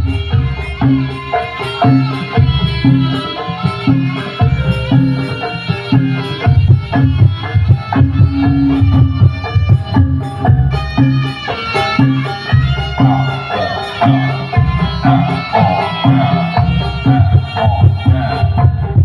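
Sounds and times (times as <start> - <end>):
hand drums beating: 0.0 - 19.0
pitched gamelan percussion melody: 0.0 - 19.0.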